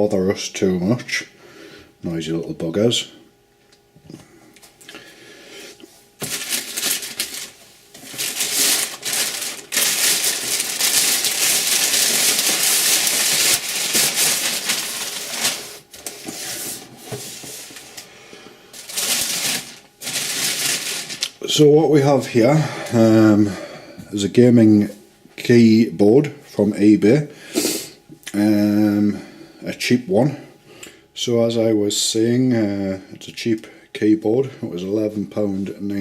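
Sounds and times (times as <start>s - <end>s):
packaging crinkling and rustling: 6.2s - 18.1s, 18.7s - 21.5s.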